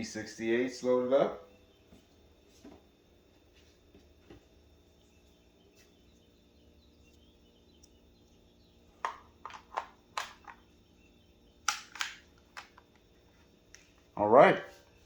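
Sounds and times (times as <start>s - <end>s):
sharp clicks of loading rounds: 9.0s - 10.7s, 11.6s - 13.1s.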